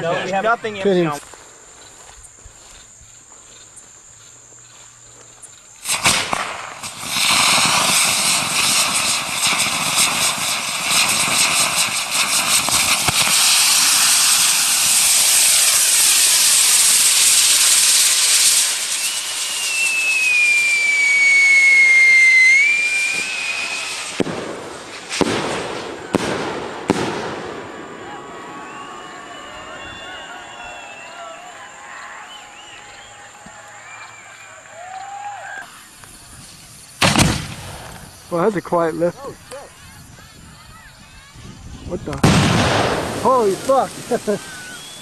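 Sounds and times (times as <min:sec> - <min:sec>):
fireworks hissing and crackling: 0:00.0 - 0:45.0
sharp firework bangs: 0:05.8 - 0:31.4, 0:37.0 - 0:38.2, 0:42.1 - 0:45.0
firework whistle sliding down: 0:05.9 - 0:35.8, 0:43.2 - 0:45.0.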